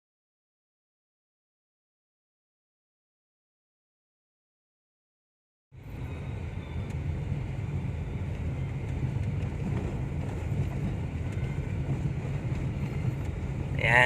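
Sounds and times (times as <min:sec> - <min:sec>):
road and engine rumble in car: 0:05.8 - 0:14.0.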